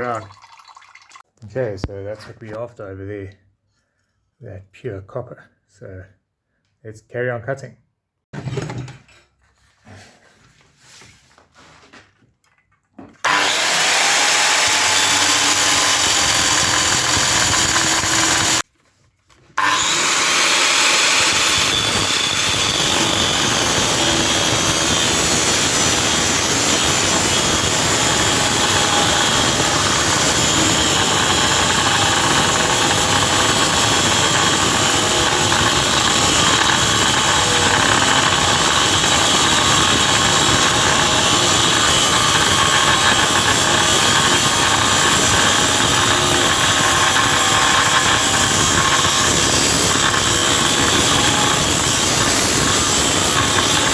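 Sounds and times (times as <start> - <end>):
power tool cutting metal: 13.2 - 18.6, 19.6 - 53.9.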